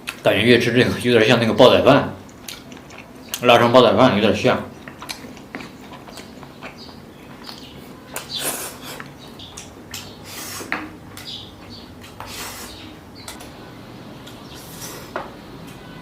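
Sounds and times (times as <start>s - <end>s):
chewing: 2.2s - 3.5s, 4.7s - 12.8s.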